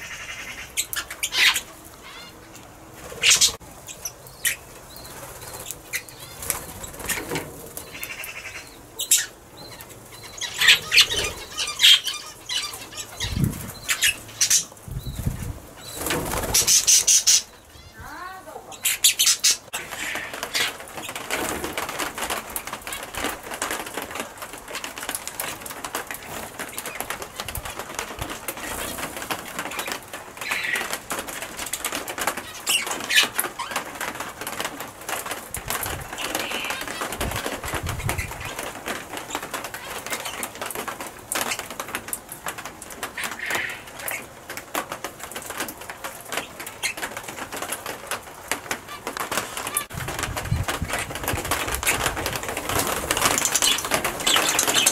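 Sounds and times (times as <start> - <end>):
parrot wings flapping: 15.2 - 17.4, 19.7 - 54.9.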